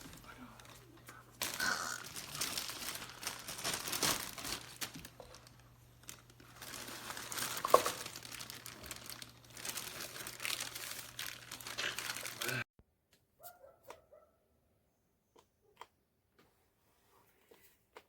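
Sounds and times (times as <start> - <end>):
filter material crinkling: 0.0 - 12.7.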